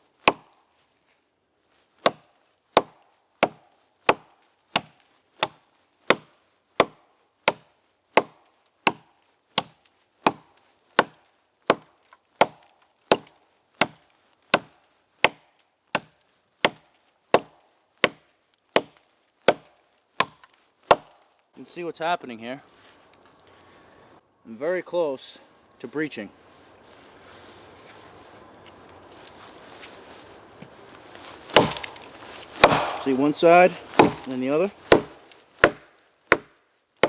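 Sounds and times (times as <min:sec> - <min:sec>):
axe chopping log: 0:00.2 - 0:00.6, 0:02.0 - 0:21.2, 0:31.4 - 0:36.6.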